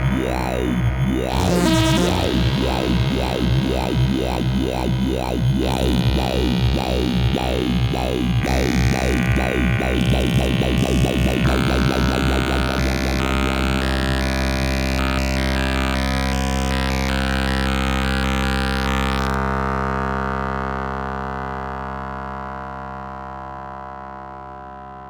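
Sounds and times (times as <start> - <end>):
buzzy synthesizer note: 0.0 - 19.6.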